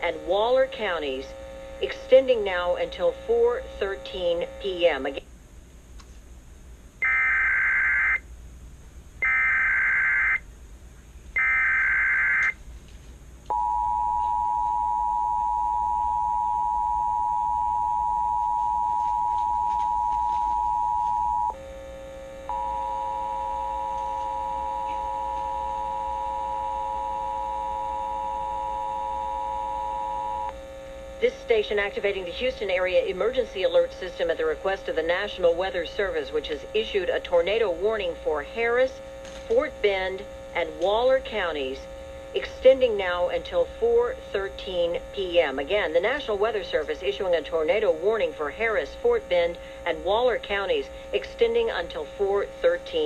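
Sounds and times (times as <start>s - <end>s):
two-tone attention signal: 13.5s - 21.6s, 22.5s - 30.5s
low steady tone: 13.5s - 31.8s
buzz: 19.2s - 32.2s.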